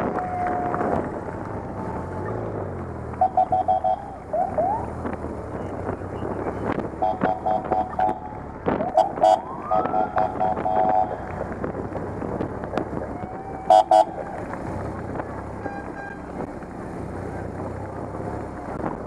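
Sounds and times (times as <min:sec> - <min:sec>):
siren whoop: 0:00.0 - 0:01.1, 0:03.4 - 0:04.9, 0:09.2 - 0:11.0, 0:13.1 - 0:14.4
motorcycle engines rumbling: 0:00.0 - 0:19.0
motorcycle horns tooting: 0:03.2 - 0:04.5, 0:07.0 - 0:11.2, 0:13.6 - 0:14.3, 0:15.6 - 0:16.4.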